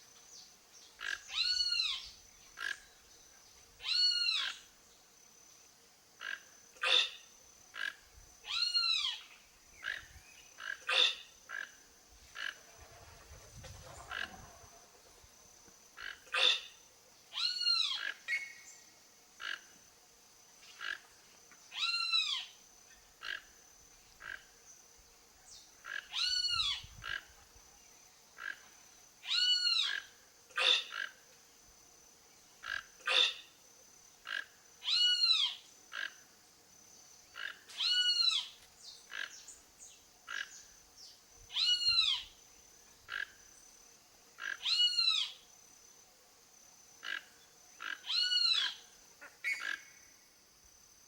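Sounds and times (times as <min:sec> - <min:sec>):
toucan croaking calls: 0:01.0 - 0:02.9, 0:06.2 - 0:12.7, 0:13.8 - 0:15.1, 0:16.0 - 0:18.6, 0:19.4 - 0:19.8, 0:20.7 - 0:21.1, 0:23.2 - 0:23.6, 0:24.2 - 0:24.5, 0:25.8 - 0:27.4, 0:28.4 - 0:31.2, 0:32.6 - 0:33.6, 0:34.2 - 0:36.2, 0:37.3 - 0:39.5, 0:40.3 - 0:40.7, 0:41.5 - 0:42.4, 0:43.0 - 0:43.4, 0:44.4 - 0:45.4, 0:47.0 - 0:50.0.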